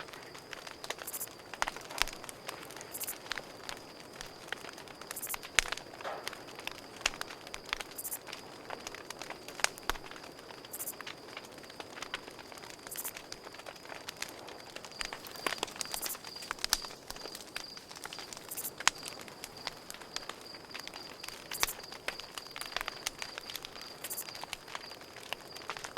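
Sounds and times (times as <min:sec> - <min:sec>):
campfire crackling and popping: 0:00.0 - 0:25.9
crickets trilling and chirping: 0:00.0 - 0:25.9.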